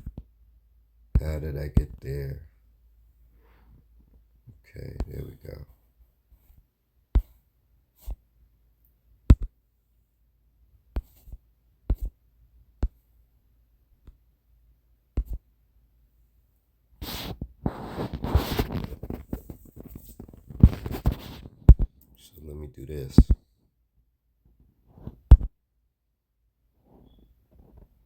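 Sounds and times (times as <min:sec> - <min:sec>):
rustling noise: 0:17.0 - 0:22.0.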